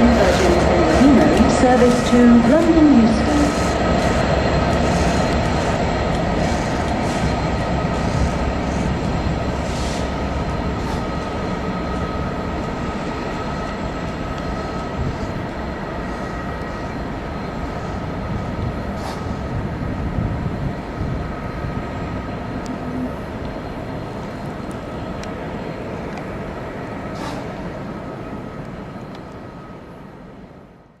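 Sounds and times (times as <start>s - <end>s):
diesel locomotive rumble: 0.0s - 30.0s
thin whine: 21.8s - 25.3s.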